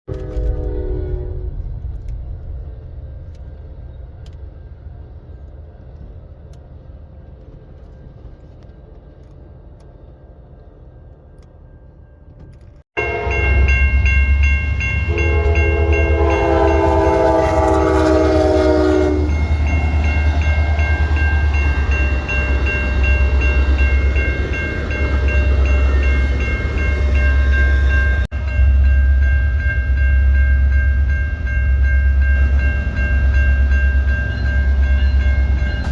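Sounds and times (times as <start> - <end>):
multi-note train horn: 0.1 - 1.8, 13.0 - 14.2, 14.8 - 20.0
diesel locomotive engine rumble: 0.1 - 35.9
train sounds: 0.1 - 35.9
steady high ringing: 13.0 - 35.9.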